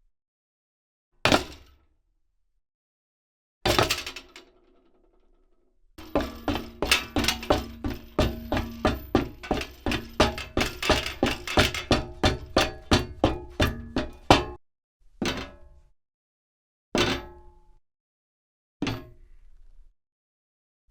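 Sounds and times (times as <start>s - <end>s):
footsteps on metal grate: 6.0s - 14.6s.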